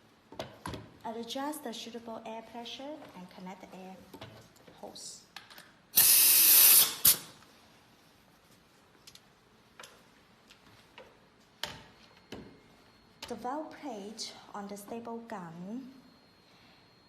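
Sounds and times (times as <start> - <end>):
compressed air hissing: 6.0 - 7.3.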